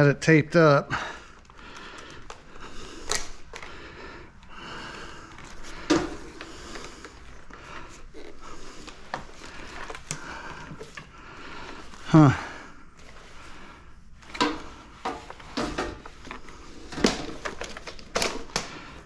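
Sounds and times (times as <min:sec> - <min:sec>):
vacuum cleaner being handled: 0:05.3 - 0:11.2, 0:14.2 - 0:19.0.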